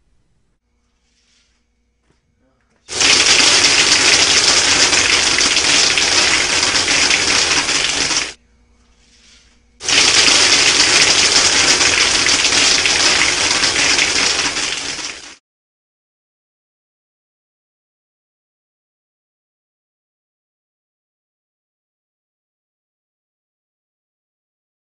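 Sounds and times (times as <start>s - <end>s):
rattle of airsoft pellets: 2.9s - 8.4s, 9.8s - 15.4s
rush of compressed air: 2.9s - 8.4s, 9.2s - 15.4s.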